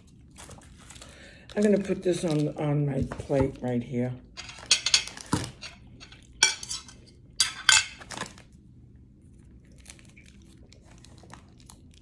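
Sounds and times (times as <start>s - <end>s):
food packaging ripping: 0.0s - 2.7s, 7.9s - 8.6s, 9.4s - 12.0s
faint packaging rustling: 0.0s - 3.9s, 9.3s - 12.0s.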